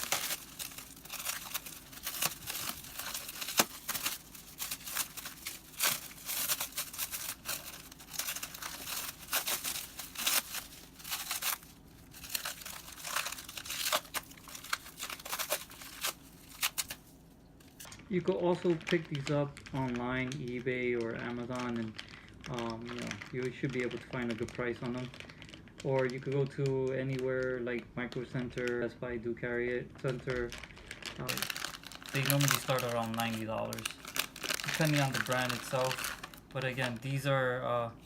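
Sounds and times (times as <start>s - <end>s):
sharp plastic crack: 0.0s - 17.0s
plastic packaging crinkling: 0.0s - 37.8s.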